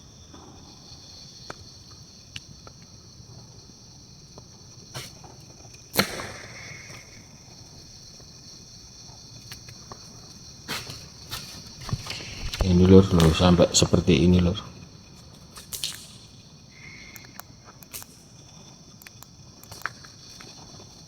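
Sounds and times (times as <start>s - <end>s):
night insects chorus: 0.0s - 21.0s
sharp clicks: 15.6s - 18.2s, 19.0s - 20.1s.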